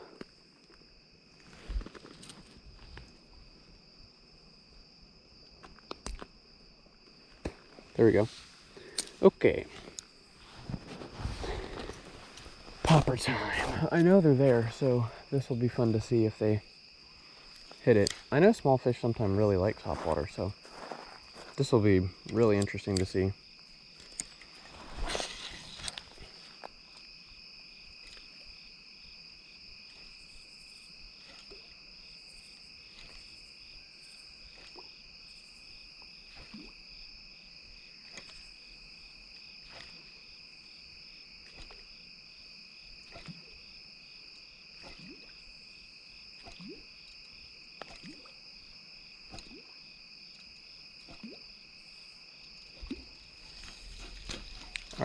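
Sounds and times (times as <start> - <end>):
crickets and insects chirping: 0.0 - 55.0
rustle: 7.3 - 16.2, 23.6 - 49.4, 50.0 - 55.0.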